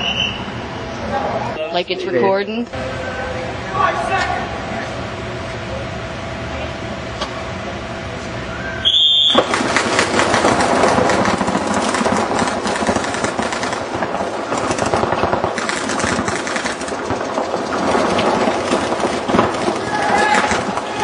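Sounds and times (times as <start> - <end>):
rapid fire of paintball markers: 9.3 - 21.0.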